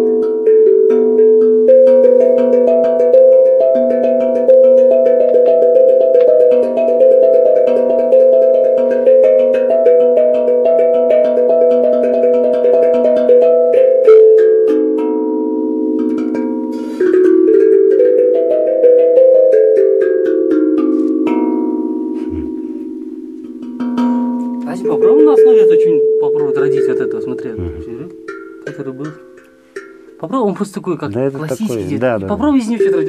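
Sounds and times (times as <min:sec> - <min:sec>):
tuned percussion music: 0:00.0 - 0:33.0.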